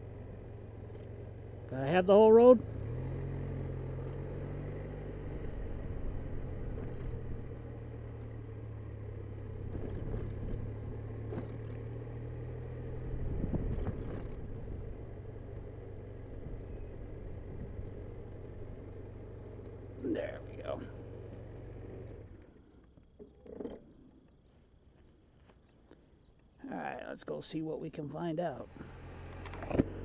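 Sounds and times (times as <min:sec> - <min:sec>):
scooter engine running: 0:00.0 - 0:22.6, 0:28.7 - 0:30.0
road noise: 0:00.0 - 0:30.0.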